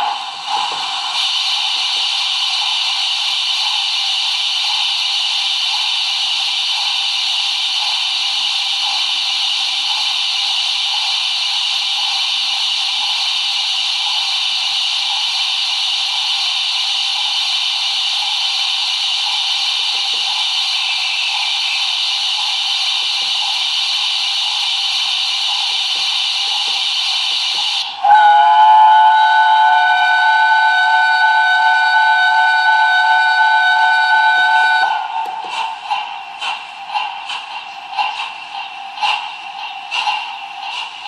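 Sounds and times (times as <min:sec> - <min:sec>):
steam hiss from small speaker: 0:00.0 - 0:32.2.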